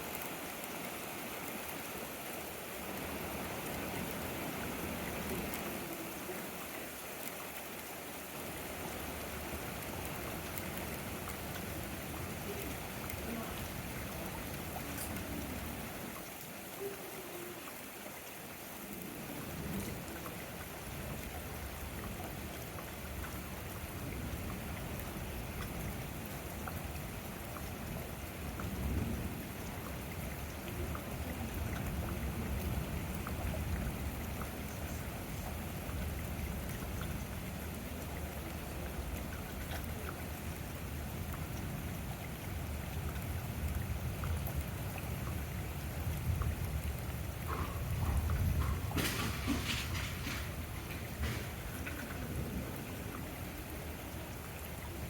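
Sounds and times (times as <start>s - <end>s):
steady rain falling: 0.0s - 55.0s
low rumble of thunder: 18.9s - 55.0s.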